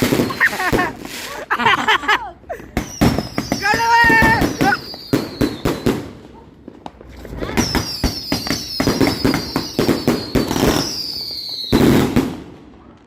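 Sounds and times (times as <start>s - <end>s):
falling firework whistles: 0.0s - 1.0s, 2.8s - 6.2s, 7.1s - 12.2s
fireworks bangs and crackles: 0.0s - 1.9s, 2.5s - 13.0s.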